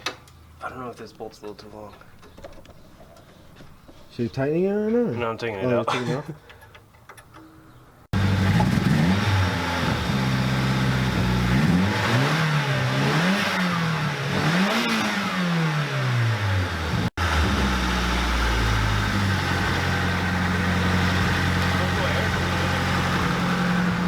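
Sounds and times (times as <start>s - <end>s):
car engine revving: 8.1s - 24.0s.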